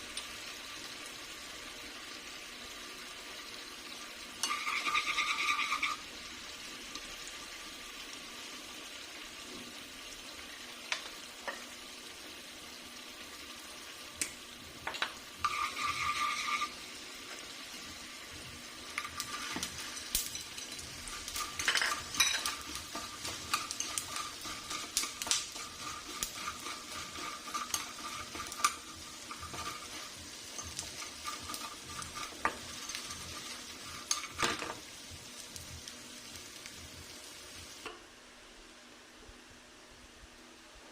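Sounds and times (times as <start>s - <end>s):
pork skin sizzling in a pan: 0.0s - 38.1s
utensil scraping and clinking on pan: 4.4s - 6.0s, 14.9s - 16.8s, 18.9s - 34.8s.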